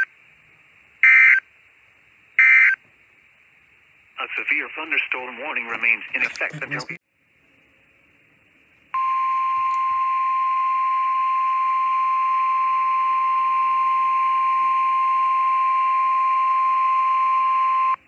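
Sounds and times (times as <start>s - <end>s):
faint radio hiss: 0.0s - 18.0s.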